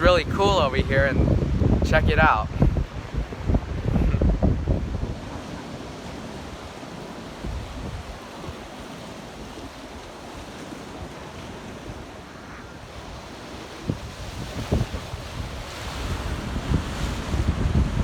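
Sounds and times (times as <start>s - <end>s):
ocean surf washing onto beach: 0.0s - 18.0s
wind rumbling on microphone: 0.0s - 18.0s.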